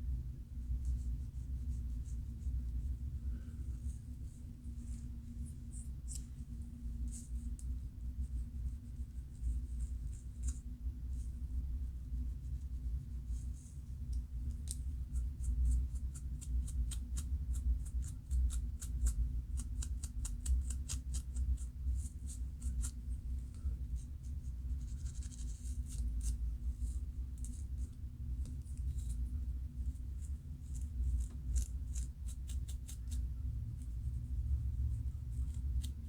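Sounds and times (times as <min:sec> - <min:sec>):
steady low hum: 0:00.0 - 0:36.0
scalp scratching: 0:24.2 - 0:29.3, 0:30.0 - 0:33.2.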